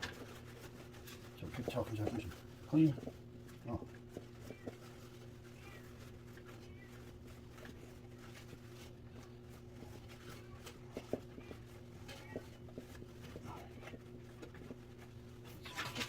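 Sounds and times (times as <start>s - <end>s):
paper towel rustling on fan blades: 0.0s - 16.0s
steady low hum: 0.0s - 16.0s.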